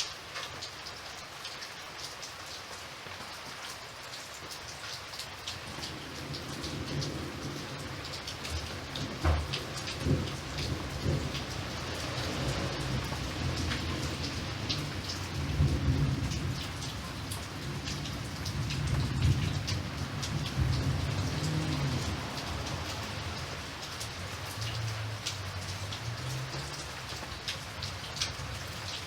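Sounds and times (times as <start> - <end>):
raindrops tapping on a surface: 0.0 - 29.0
steady rain: 0.0 - 29.0
low rolling thunder: 5.6 - 25.3.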